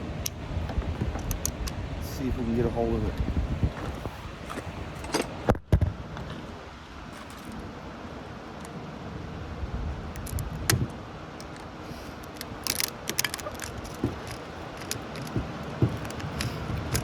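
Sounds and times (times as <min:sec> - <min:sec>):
steel laminations clinking and scraping: 0:11.4 - 0:17.0.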